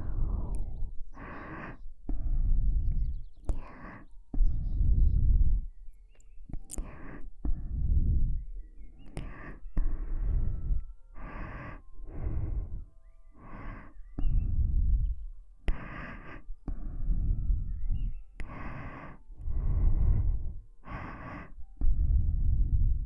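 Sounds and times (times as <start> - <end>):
breath puffing on microphone: 0.0 - 5.7, 6.6 - 8.5
slow breathing: 0.0 - 23.0.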